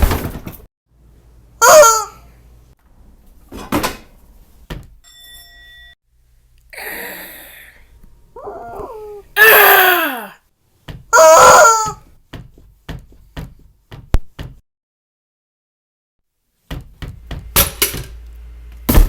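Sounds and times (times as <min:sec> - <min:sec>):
bell-like ding: 0:05.0 - 0:06.0
vocal cry falling in pitch: 0:08.4 - 0:10.4.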